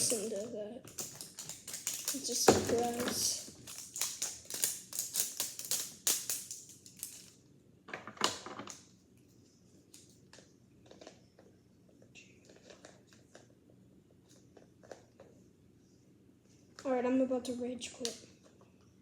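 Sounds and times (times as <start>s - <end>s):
plastic packaging crinkling: 0.0s - 7.4s, 12.4s - 13.5s.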